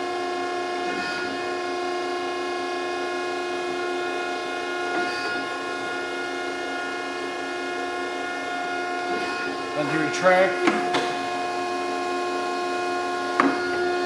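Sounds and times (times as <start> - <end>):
hydraulic pump whine: 0.0 - 14.0.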